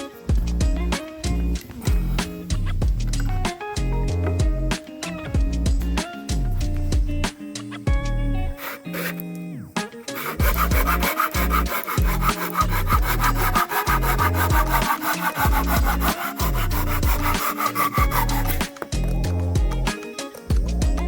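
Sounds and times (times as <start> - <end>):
background music: 0.0 - 21.0
hand saw cutting wood: 8.5 - 9.3, 10.1 - 19.0.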